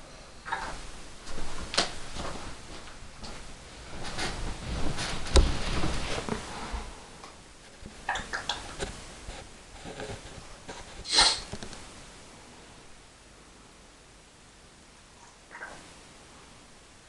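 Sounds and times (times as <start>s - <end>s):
parrot sniff-like noise: 11.0s - 11.5s.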